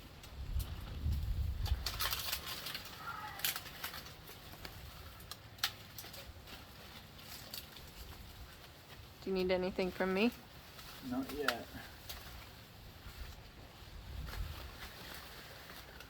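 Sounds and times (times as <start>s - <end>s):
wind rumble on microphone: 0.0s - 2.3s, 12.8s - 14.9s
leaves and twigs rustling: 0.0s - 16.0s.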